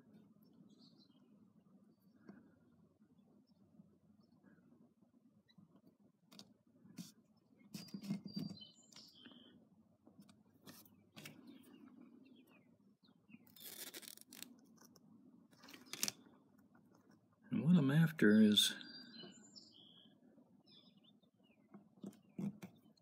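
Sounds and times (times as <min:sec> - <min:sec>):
masking tape clicks and scrapes: 0:13.4 - 0:15.0, 0:15.6 - 0:16.2, 0:22.0 - 0:23.0.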